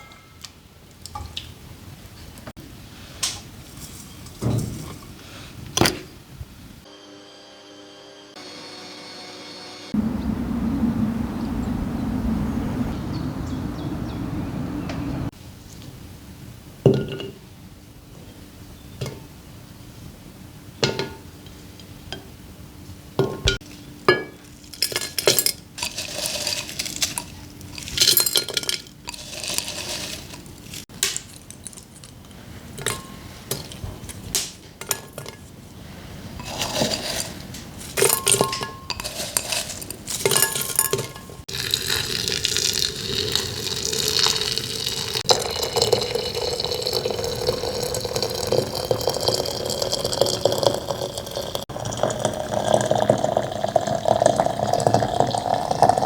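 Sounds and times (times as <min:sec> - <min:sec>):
dishes clinking and knocking: 0:16.9 - 0:17.4, 0:20.8 - 0:21.3, 0:23.2 - 0:35.5, 0:36.4 - 0:41.8
running water: 0:24.4 - 0:35.3, 0:36.4 - 0:56.0.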